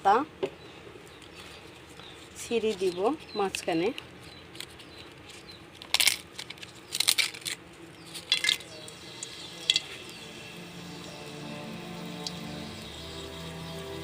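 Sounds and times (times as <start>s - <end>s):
dry leaves crackling in hot oil: 5.7s - 14.0s
faint background music: 6.0s - 14.0s.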